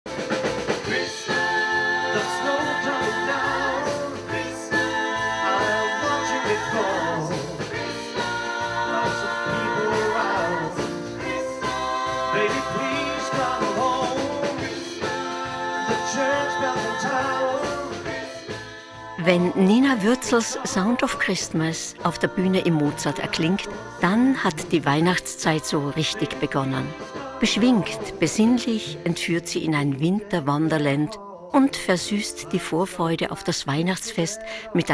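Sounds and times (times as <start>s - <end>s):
instrumental backing with beat: 0.1s - 20.9s
person singing gospel song: 0.8s - 34.9s.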